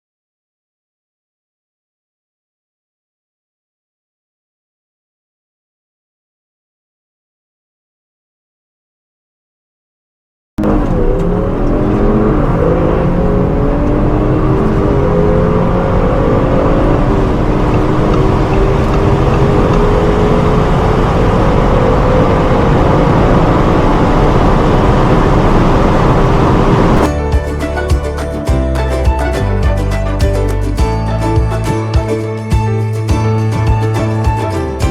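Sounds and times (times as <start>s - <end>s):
car engine accelerating hard: 10.6s - 27.1s.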